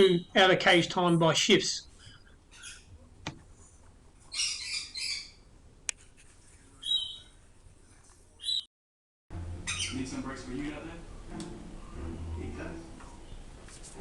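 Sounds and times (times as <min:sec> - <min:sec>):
parrots calling: 0:04.3 - 0:05.4, 0:09.5 - 0:10.2.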